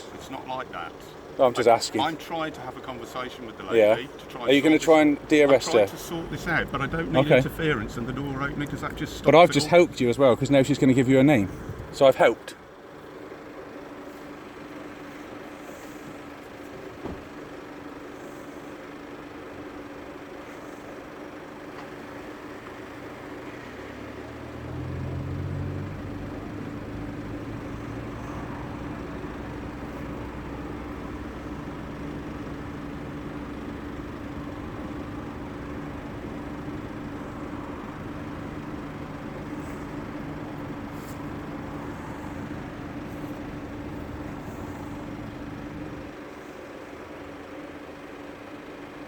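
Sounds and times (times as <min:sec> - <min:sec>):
vehicle engine idling: 0:00.0 - 0:49.0.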